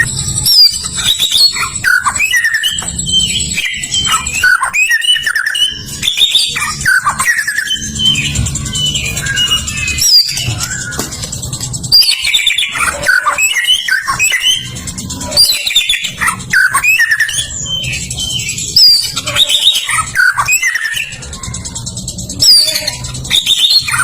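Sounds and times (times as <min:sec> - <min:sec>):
songbirds singing: 0:00.0 - 0:24.0
steady low hum: 0:00.0 - 0:24.0.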